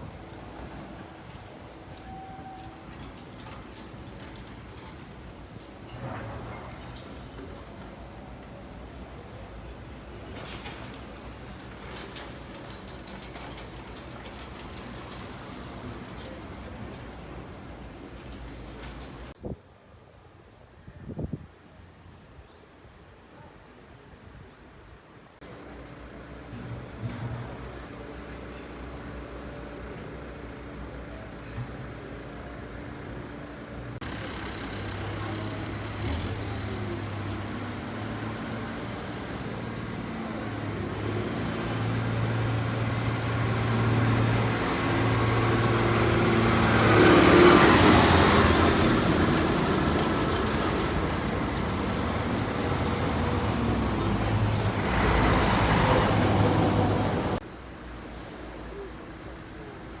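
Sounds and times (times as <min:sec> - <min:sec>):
vehicle engine passing: 0:34.0 - 0:57.4.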